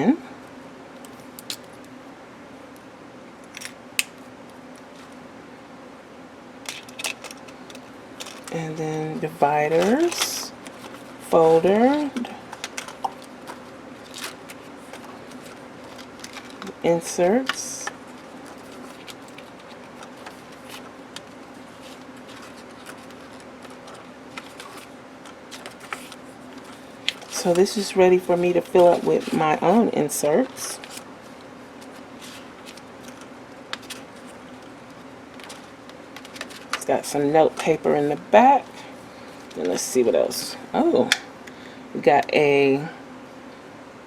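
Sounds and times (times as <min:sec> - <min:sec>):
steady low hum: 0:00.0 - 0:44.0
paper clicks and rustles: 0:06.7 - 0:08.6, 0:09.6 - 0:37.7
planner pages being handled: 0:06.7 - 0:37.9.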